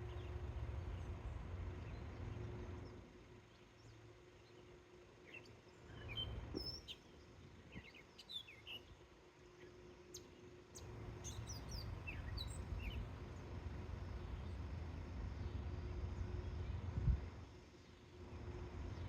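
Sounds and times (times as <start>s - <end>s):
faint low rumble: 0.0s - 8.0s, 10.8s - 19.0s
birds chirping: 9.6s - 14.7s.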